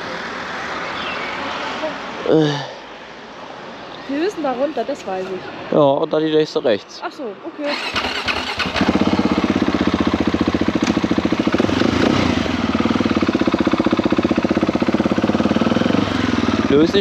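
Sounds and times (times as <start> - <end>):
motorcycle engine idling: 7.8 - 17.0.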